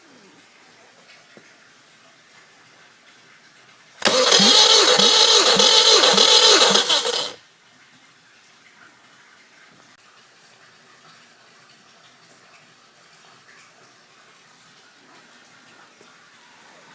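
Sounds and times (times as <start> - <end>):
engine cranking by starter motor: 4.0 - 7.4.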